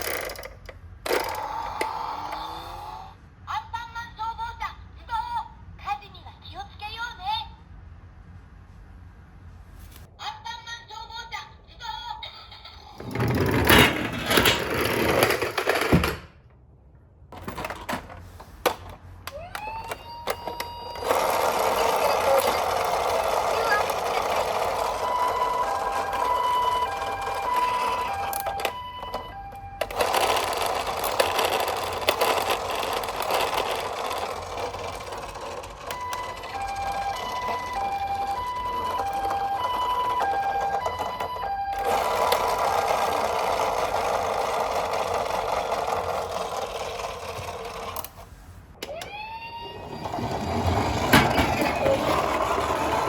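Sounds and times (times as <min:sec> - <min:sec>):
wailing siren tone: 0:19.3 - 0:30.0, 0:35.9 - 0:42.5, 0:48.8 - 0:50.5
toy siren two-tone call: 0:19.3 - 0:45.6, 0:48.8 - 0:50.3.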